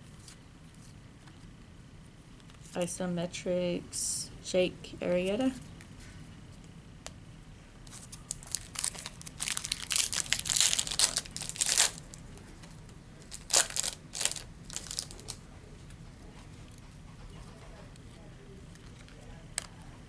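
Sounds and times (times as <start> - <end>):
plastic wrapper crinkling and tearing: 7.9 - 15.4.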